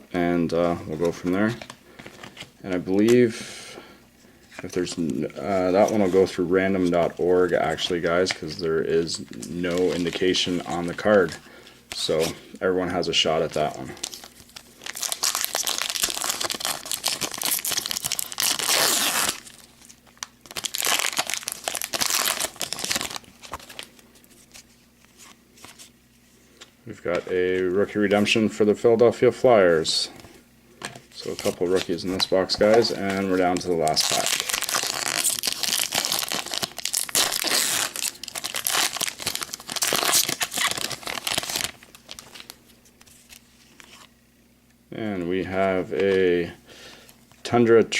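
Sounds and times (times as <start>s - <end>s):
plastic wrapper crinkling and tearing: 13.1s - 25.9s, 31.1s - 44.1s.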